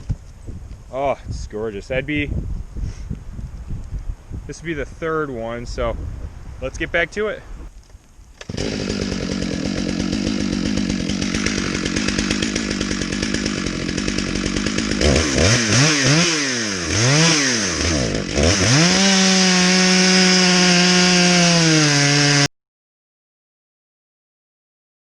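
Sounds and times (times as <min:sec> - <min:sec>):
chainsaw revving: 0:08.4 - 0:22.5.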